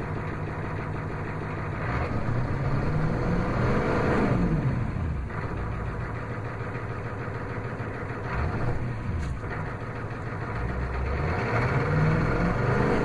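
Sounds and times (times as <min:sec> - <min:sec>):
diesel engine idling and revving: 0:00.0 - 0:13.0.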